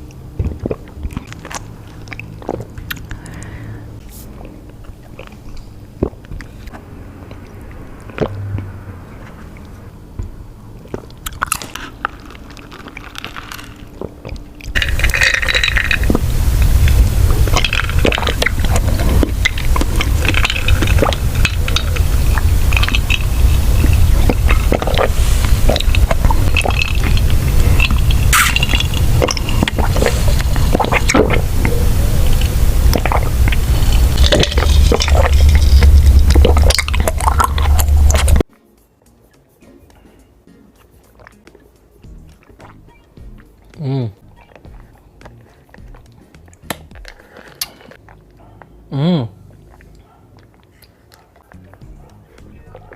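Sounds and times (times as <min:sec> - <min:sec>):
crackling chewing: 0:00.0 - 0:08.4, 0:10.7 - 0:38.5, 0:40.7 - 0:52.9
chewing: 0:00.0 - 0:09.9, 0:10.8 - 0:38.5, 0:40.8 - 0:52.9
sipping: 0:00.0 - 0:38.5, 0:40.8 - 0:52.9
low rumble: 0:06.0 - 0:11.2, 0:13.5 - 0:38.4
wet clicks: 0:44.4 - 0:48.4.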